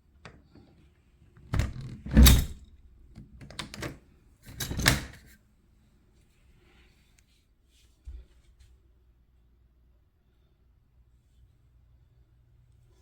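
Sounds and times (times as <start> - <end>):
door thudding and rattling: 1.5 - 2.6.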